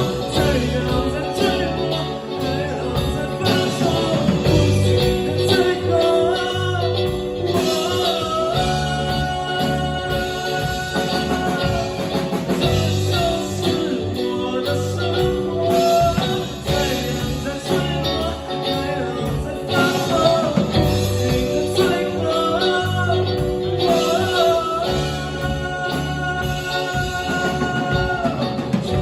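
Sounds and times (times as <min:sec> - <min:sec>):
bass guitar: 0:00.0 - 0:29.0
drum kit: 0:00.0 - 0:29.0
electric guitars: 0:00.0 - 0:29.0
person singing: 0:00.0 - 0:29.0.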